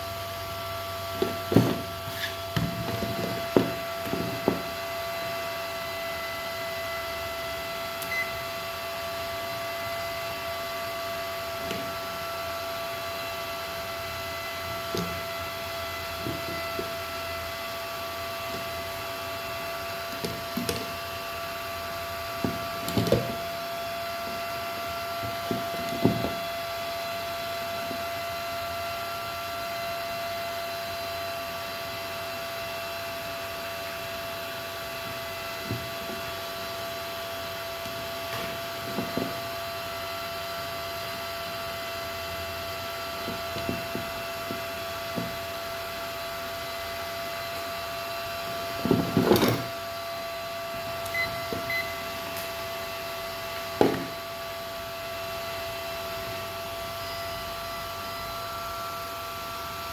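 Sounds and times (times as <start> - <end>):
electrical hum: 33.0 - 58.3.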